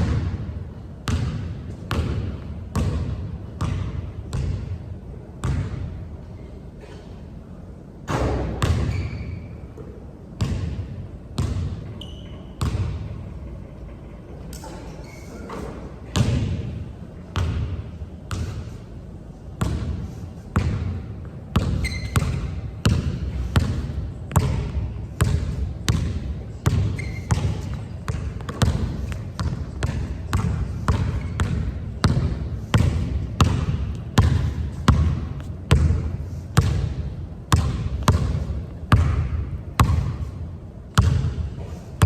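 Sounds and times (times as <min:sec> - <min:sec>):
basketball bouncing on hard court: 0:00.0 - 0:00.4, 0:01.1 - 0:04.7, 0:05.4 - 0:05.8, 0:08.2 - 0:09.3, 0:10.4 - 0:13.1, 0:16.1 - 0:16.8, 0:17.4 - 0:18.6, 0:19.6 - 0:20.0, 0:20.6 - 0:40.3, 0:41.0 - 0:41.5
shoe squeaks: 0:08.7 - 0:09.8, 0:11.9 - 0:12.6, 0:14.6 - 0:15.9, 0:21.6 - 0:22.7, 0:26.7 - 0:31.8.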